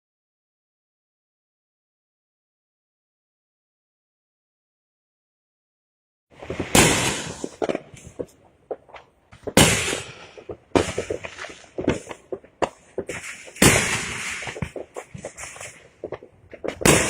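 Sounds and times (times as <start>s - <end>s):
firework bursts: 6.4s - 17.0s
rapid crackling pops: 6.4s - 17.0s.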